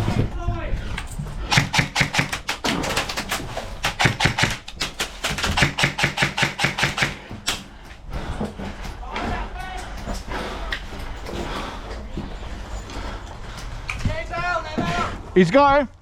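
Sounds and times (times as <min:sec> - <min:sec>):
rapid sharp clicks: 0:01.5 - 0:07.3.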